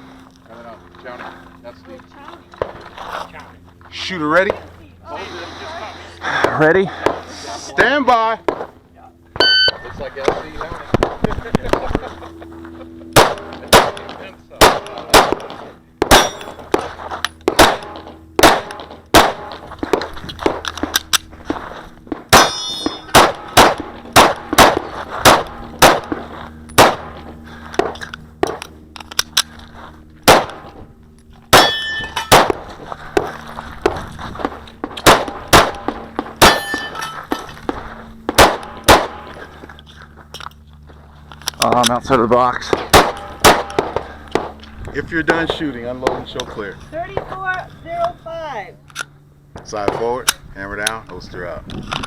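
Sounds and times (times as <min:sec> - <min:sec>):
metallic ringing: 0:09.4 - 0:10.0, 0:16.1 - 0:16.7, 0:22.4 - 0:23.2, 0:31.5 - 0:32.4, 0:36.4 - 0:37.6
pistol shots: 0:13.1 - 0:16.8, 0:17.4 - 0:20.6, 0:22.2 - 0:28.6, 0:30.2 - 0:30.8, 0:31.5 - 0:32.6, 0:34.4 - 0:36.9, 0:38.3 - 0:39.4, 0:42.7 - 0:44.6.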